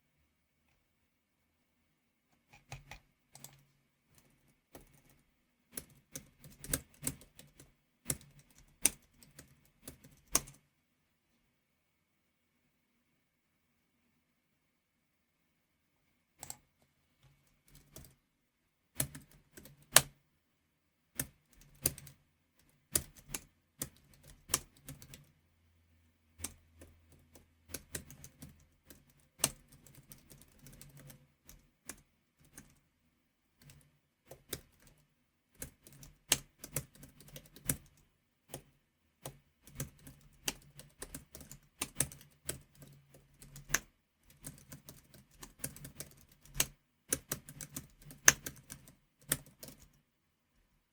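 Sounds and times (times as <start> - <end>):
typing on computer keyboard: 2.5 - 10.6, 16.4 - 16.6, 17.4 - 18.2, 19.0 - 20.2, 21.2 - 25.3, 26.4 - 32.8, 33.6 - 50.0.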